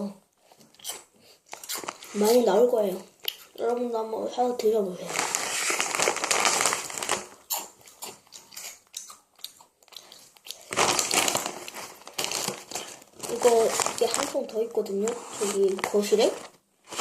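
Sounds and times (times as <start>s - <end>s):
potato chips crunching: 5.1s - 14.6s.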